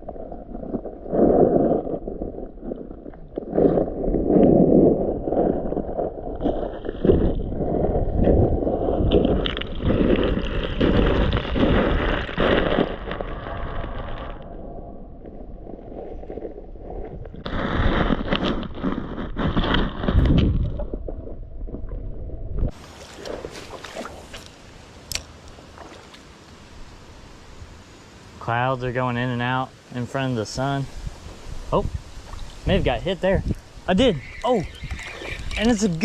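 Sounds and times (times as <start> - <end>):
wind buffeting microphone: 0.0 - 13.2, 15.8 - 23.7, 30.8 - 36.0
creek water flowing: 22.7 - 36.0.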